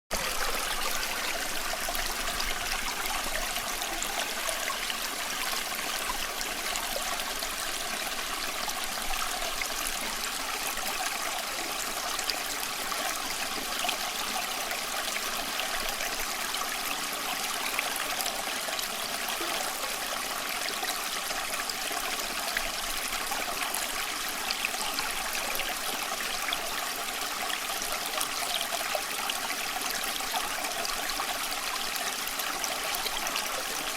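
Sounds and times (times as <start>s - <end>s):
stream babbling over stones: 0.1s - 33.9s.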